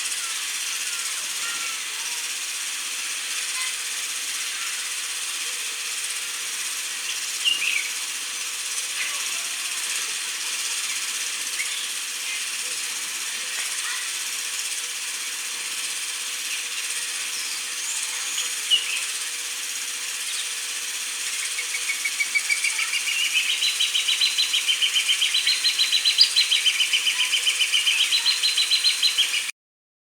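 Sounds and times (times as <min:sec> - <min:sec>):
bird whistled calls: 0:21.3 - 0:29.5.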